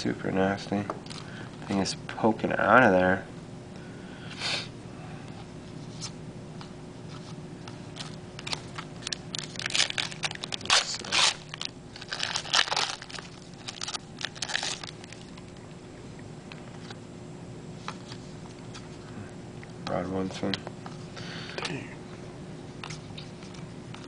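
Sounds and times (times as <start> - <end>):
cards being handled: 5.8 - 15.4
foil wrapper crinkling and tearing: 8.0 - 15.4.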